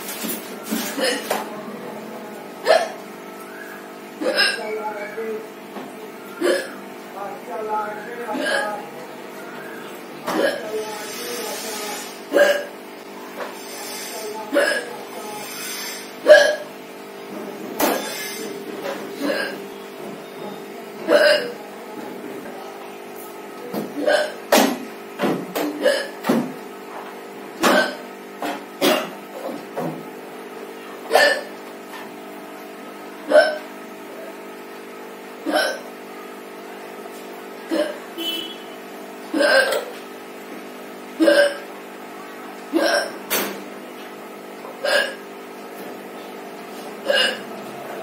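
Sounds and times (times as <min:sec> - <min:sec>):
woman hiccupping: 0:00.8 - 0:01.4, 0:02.6 - 0:03.0, 0:04.2 - 0:04.7, 0:06.3 - 0:06.8, 0:08.3 - 0:08.8, 0:10.3 - 0:10.8, 0:12.3 - 0:12.8, 0:14.5 - 0:15.0, 0:16.2 - 0:16.7, 0:18.8 - 0:19.7, 0:21.0 - 0:21.6, 0:24.0 - 0:24.4, 0:25.6 - 0:26.2, 0:27.6 - 0:28.0, 0:31.1 - 0:31.5, 0:33.3 - 0:33.7, 0:35.5 - 0:35.9, 0:37.7 - 0:38.0, 0:39.3 - 0:39.9, 0:41.2 - 0:41.7, 0:42.7 - 0:43.2, 0:44.8 - 0:45.2, 0:47.0 - 0:47.5.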